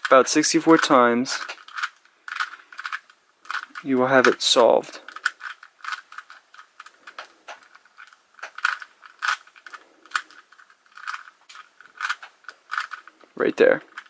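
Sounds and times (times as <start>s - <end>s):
puzzle cube clicking as twisted: 0.0s - 14.0s.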